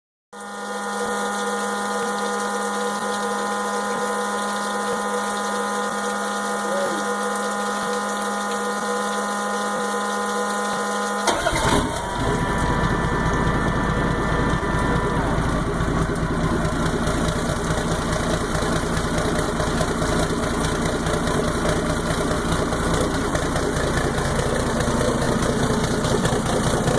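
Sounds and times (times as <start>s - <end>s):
electric motor hum: 0.4s - 26.9s
diesel engine cranking and idling: 10.8s - 26.9s.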